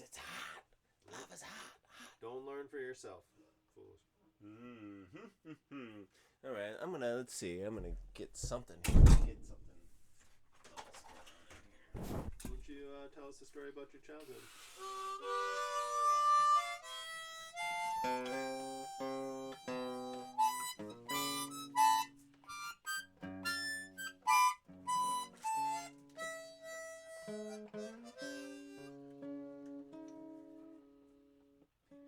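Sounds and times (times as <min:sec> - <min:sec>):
guitar accompaniment: 0:14.1 - 0:32.0
harmonica melody: 0:14.2 - 0:30.9.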